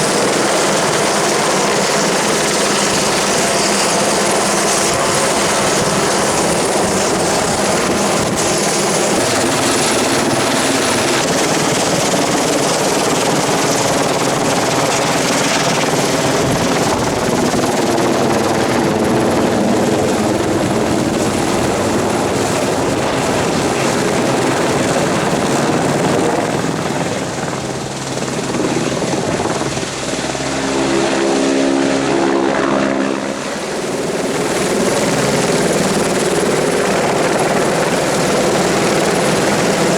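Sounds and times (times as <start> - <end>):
helicopter rotor and engine: 0.0 - 39.9.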